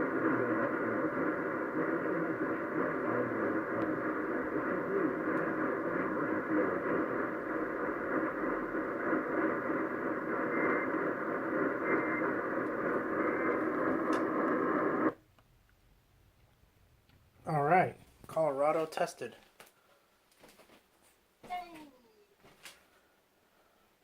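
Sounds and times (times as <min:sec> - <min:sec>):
distant am radio broadcast: 0:00.0 - 0:15.2
radio reception noise: 0:00.0 - 0:15.2.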